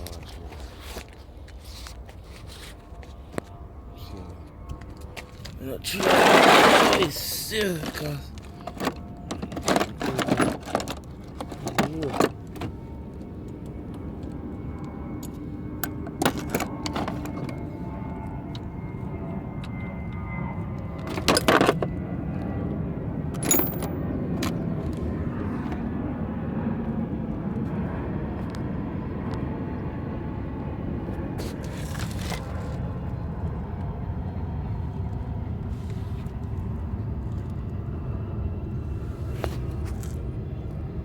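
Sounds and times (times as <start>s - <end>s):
metal tools clinking: 23.4s - 24.0s.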